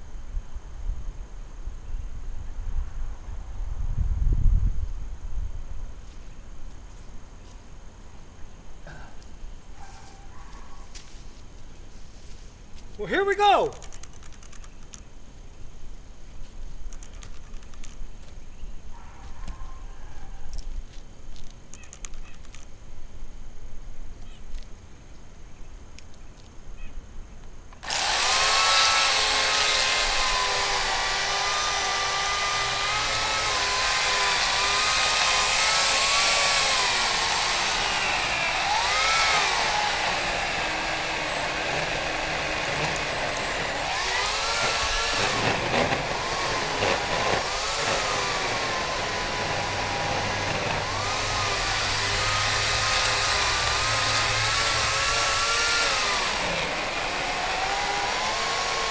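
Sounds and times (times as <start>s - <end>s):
electric chainsaw cutting wood: 27.8s - 58.9s.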